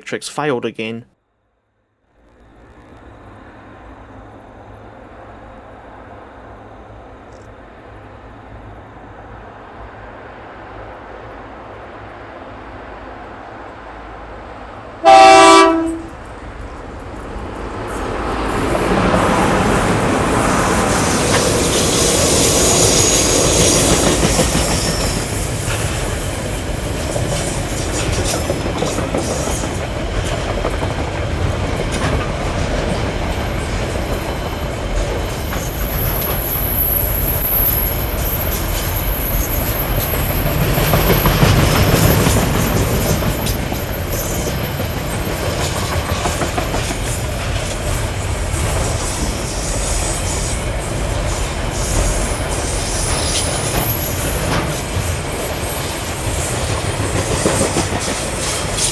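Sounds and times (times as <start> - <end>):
train rumble: 2.2 - 58.9
wheels clacking over rail joints: 15.6 - 58.9
high-pitched wheel squeal: 20.8 - 26.4, 35.4 - 45.4.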